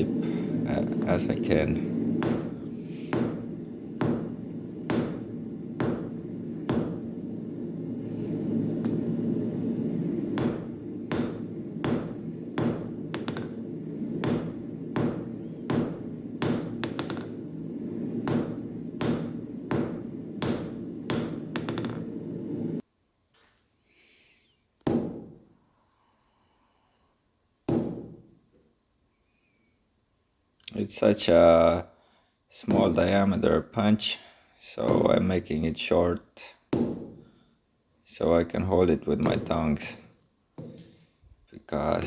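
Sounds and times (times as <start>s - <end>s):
low rumble: 0.0s - 22.8s
hammer striking steel on anvil: 2.2s - 7.4s, 8.8s - 9.2s, 10.2s - 22.3s, 24.8s - 25.4s, 27.7s - 28.2s, 32.7s - 33.0s, 36.7s - 37.2s, 39.2s - 40.0s.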